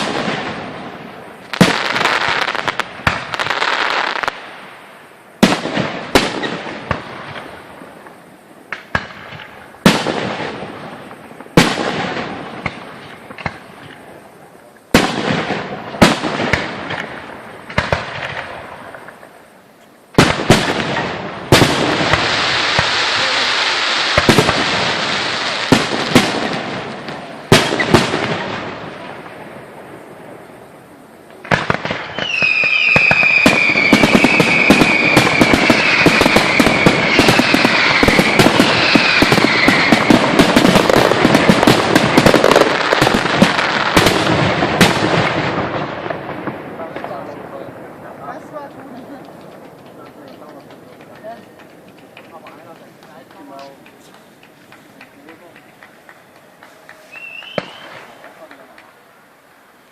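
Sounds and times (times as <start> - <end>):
crackling firework pops: 0.0 - 4.8, 5.4 - 30.1, 31.2 - 59.5
firework whistles: 15.0 - 47.4, 51.0 - 59.9
firework shells bursting: 31.3 - 59.5.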